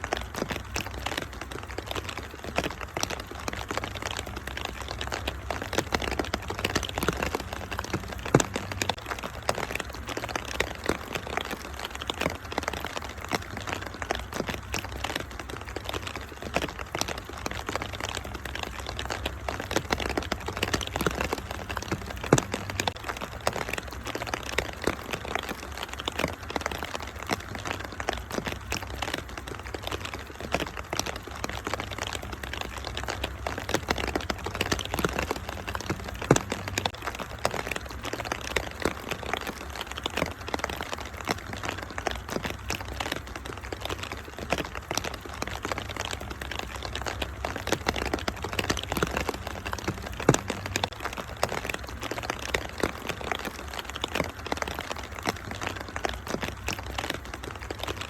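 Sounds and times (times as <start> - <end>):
rain hissing: 0.0 - 58.0
wood fire crackling: 0.0 - 58.0.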